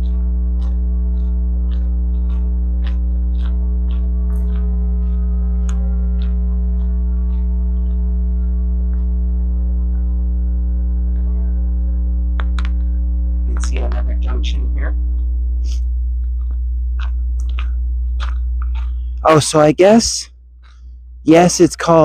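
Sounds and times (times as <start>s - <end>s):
footsteps: 0.0s - 9.1s, 15.1s - 19.4s
power lines humming: 0.0s - 22.0s.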